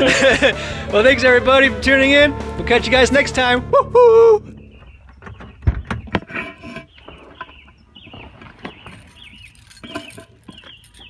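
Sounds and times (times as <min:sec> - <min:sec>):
small bird chirping: 0:06.8 - 0:11.0.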